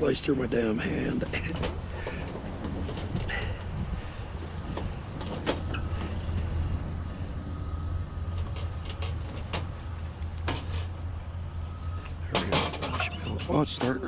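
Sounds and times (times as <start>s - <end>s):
vehicle engine idling: 0.0s - 14.0s
sharp clicks and knocks: 8.3s - 11.0s.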